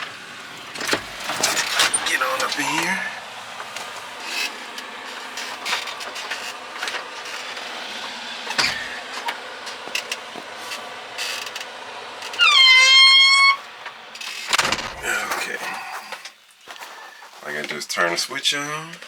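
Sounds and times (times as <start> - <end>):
knocks and clicks in cab: 0.0 - 2.7.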